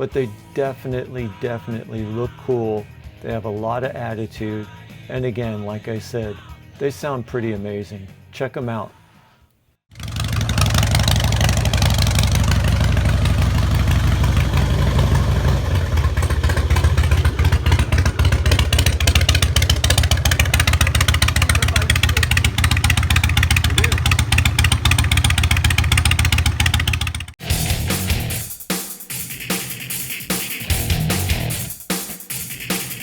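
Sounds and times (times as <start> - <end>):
motorcycle engine running: 9.9 - 28.4, 30.7 - 31.7.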